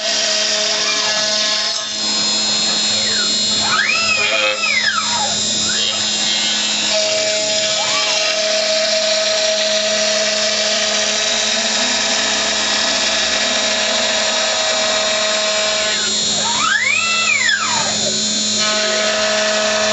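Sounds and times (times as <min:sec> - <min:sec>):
cnc router spindle whine: 0:00.0 - 0:19.9
second rising whine: 0:01.9 - 0:08.7.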